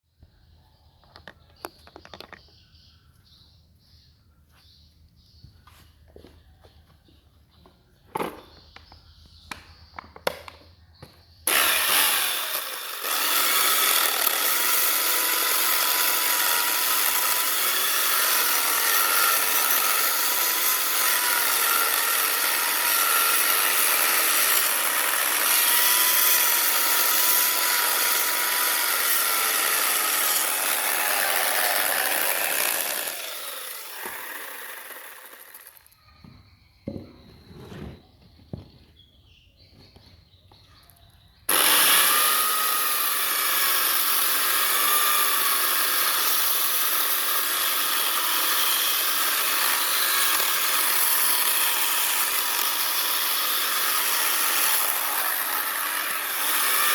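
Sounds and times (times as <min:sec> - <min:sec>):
power tool cutting wood: 0:11.4 - 0:35.9, 0:41.5 - 0:56.9.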